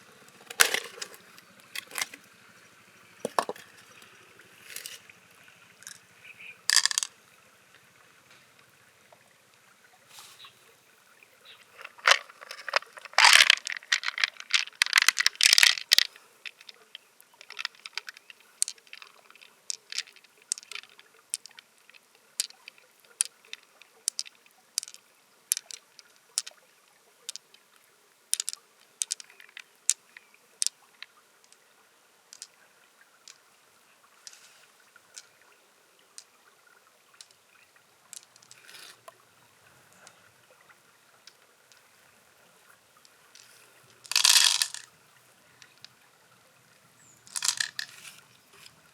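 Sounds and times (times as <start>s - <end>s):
shell scraping: 0.4s - 2.3s, 3.2s - 5.0s, 5.8s - 7.1s, 11.5s - 16.8s, 34.2s - 35.3s, 38.2s - 39.1s, 43.4s - 44.9s, 47.3s - 48.8s
shell and tool clicking: 0.5s - 2.2s, 4.7s - 5.0s, 6.7s - 7.1s, 11.8s - 16.8s, 44.1s - 44.9s, 47.3s - 48.2s
water splashing: 11.3s - 21.7s.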